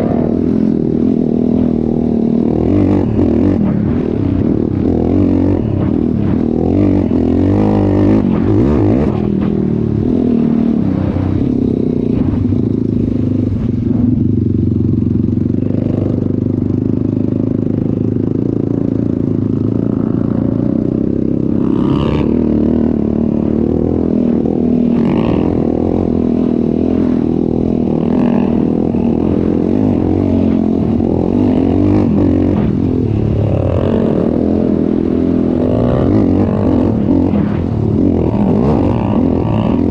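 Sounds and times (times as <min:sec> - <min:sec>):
atv engine revving: 0:00.0 - 0:39.9.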